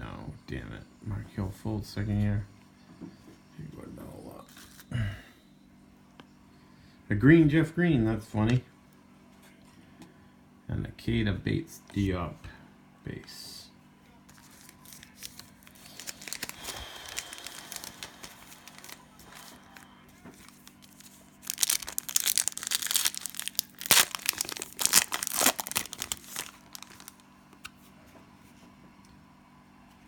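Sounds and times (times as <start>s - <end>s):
cellophane wrapper tearing and crinkling: 14.3s - 19.8s, 20.4s - 27.3s.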